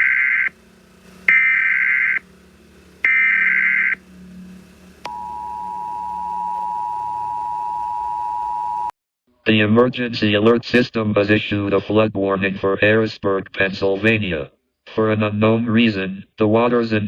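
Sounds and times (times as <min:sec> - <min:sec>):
digital data bursts: 0:00.0 - 0:00.6, 0:01.3 - 0:02.2, 0:03.0 - 0:04.0
two-tone attention signal: 0:05.1 - 0:08.9.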